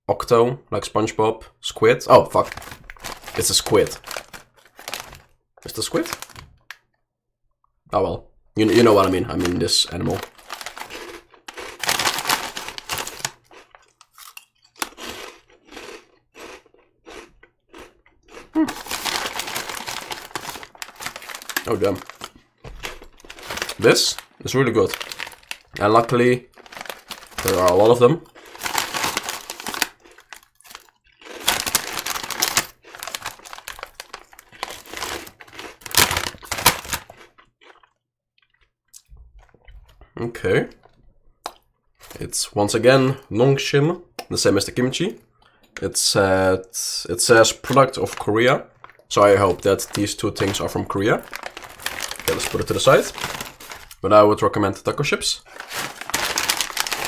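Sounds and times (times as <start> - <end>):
plastic bag crinkling: 2.3 - 6.6, 8.7 - 15.2, 18.6 - 37.3, 47.6 - 54.1, 55.2 - 57.0
snack chips crunching: 2.3 - 6.8, 8.7 - 39.7, 47.5 - 54.2, 55.0 - 57.0.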